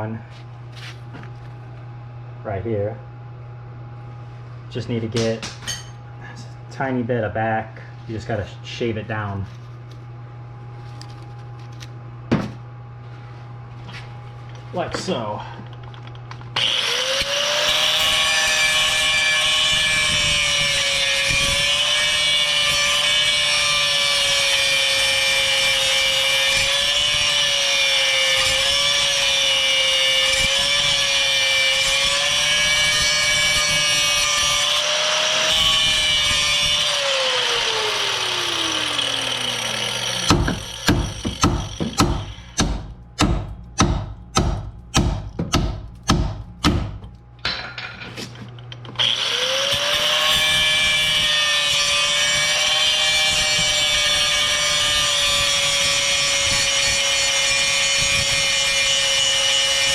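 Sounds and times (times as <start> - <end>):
power tool grinding metal: 16.6 - 42.6, 49.0 - 59.9.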